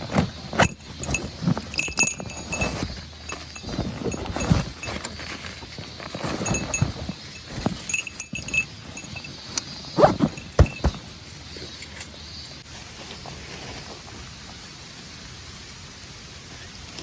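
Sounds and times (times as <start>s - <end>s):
handling knocks and thumps: 0.0s - 5.4s, 6.0s - 11.1s
small metallic clinks: 0.6s - 5.5s, 6.1s - 11.0s.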